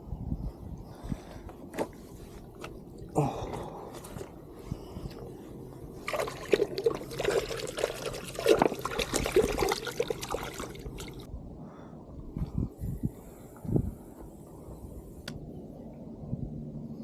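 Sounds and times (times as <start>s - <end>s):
water splashing and sloshing: 3.6s - 11.3s.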